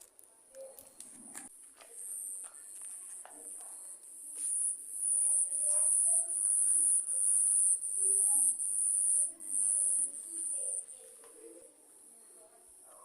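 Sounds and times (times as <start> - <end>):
cricket chirping trill: 3.5 - 10.9.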